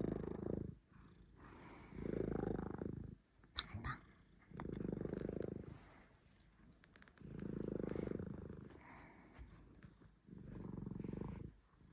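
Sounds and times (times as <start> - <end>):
cat snoring: 0.0 - 3.2, 4.5 - 5.9, 7.2 - 9.2, 10.3 - 11.6.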